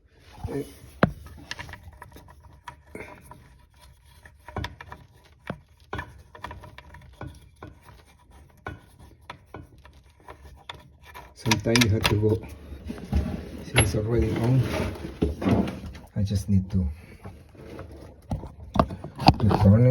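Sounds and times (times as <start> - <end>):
hands clicking and rubbing parts: 0.8 - 14.6, 17.2 - 19.9.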